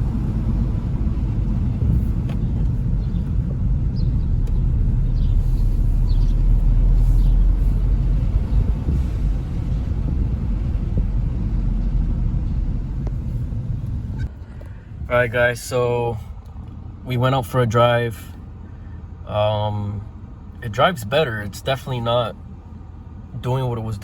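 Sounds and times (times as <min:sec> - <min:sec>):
car engine rumbling: 0:00.0 - 0:24.0.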